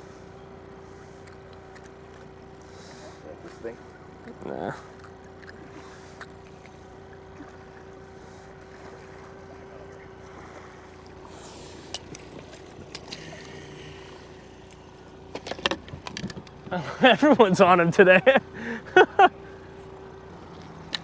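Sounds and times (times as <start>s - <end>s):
steady mechanical hum: 0.0s - 21.0s
sharp light clicks and rattles: 14.6s - 16.8s.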